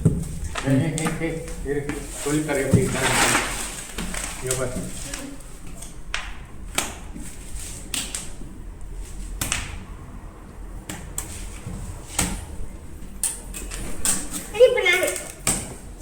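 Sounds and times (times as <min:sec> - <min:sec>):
packaging rustling: 0:00.4 - 0:05.5.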